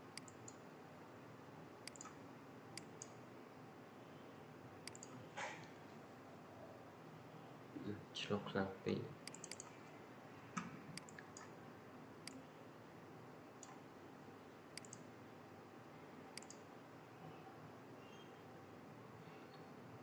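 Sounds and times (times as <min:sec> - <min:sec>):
faint room hiss: 0:00.0 - 0:20.0
computer mouse clicking: 0:00.1 - 0:00.6, 0:01.8 - 0:02.2, 0:02.8 - 0:03.2, 0:04.8 - 0:05.8, 0:09.2 - 0:09.9, 0:10.6 - 0:11.6, 0:12.2 - 0:12.4, 0:13.6 - 0:13.8, 0:14.7 - 0:15.1, 0:16.3 - 0:16.7.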